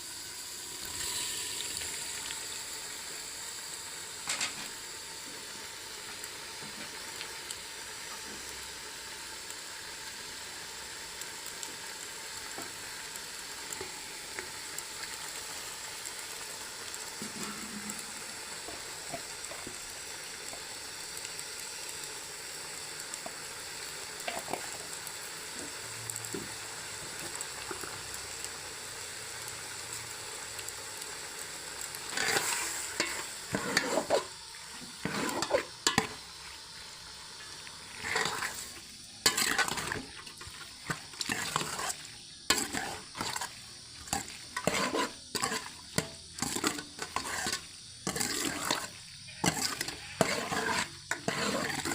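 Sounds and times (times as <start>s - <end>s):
food sizzling in a pan: 0.0s - 51.9s
spoon scraping a pan: 17.2s - 19.7s, 32.1s - 36.2s, 37.9s - 51.9s.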